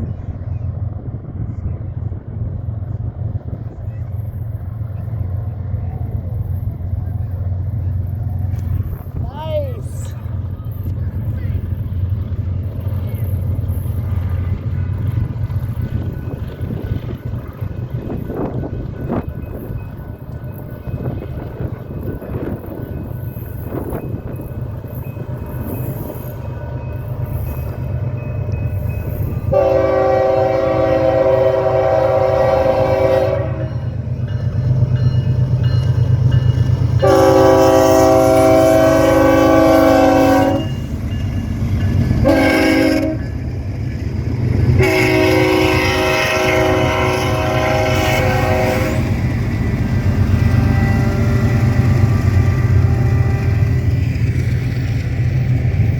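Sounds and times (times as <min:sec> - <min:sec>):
diesel locomotive rumbling: 0:00.0 - 0:55.9
train air horn blasts: 0:29.5 - 0:33.8, 0:37.0 - 0:40.8, 0:42.2 - 0:43.3, 0:44.8 - 0:49.2, 0:50.4 - 0:53.8.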